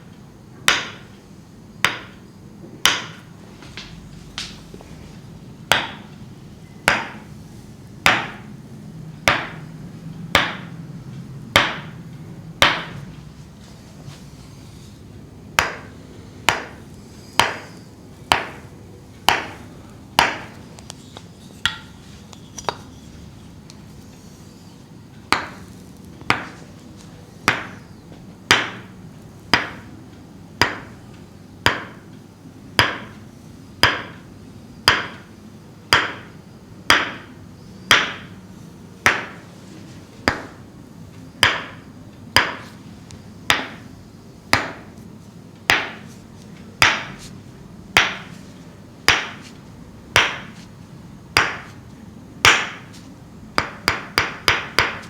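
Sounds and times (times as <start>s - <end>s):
wooden mallet tapping wooden stake: 1.8s - 2.2s, 6.9s - 7.3s, 8.1s - 8.5s, 9.3s - 9.6s, 10.4s - 10.7s, 11.6s - 12.0s, 15.6s - 15.9s, 16.5s - 16.8s, 17.4s - 17.7s, 19.3s - 19.6s, 20.2s - 20.5s, 27.4s - 27.8s, 28.5s - 28.9s, 34.9s - 35.2s, 35.9s - 36.3s, 36.9s - 37.3s, 37.9s - 38.4s, 41.4s - 41.8s, 42.4s - 42.7s, 45.7s - 46.0s, 48.0s - 48.4s, 49.1s - 49.5s, 50.2s - 50.6s, 51.4s - 51.8s, 52.4s - 52.9s, 53.6s - 55.0s.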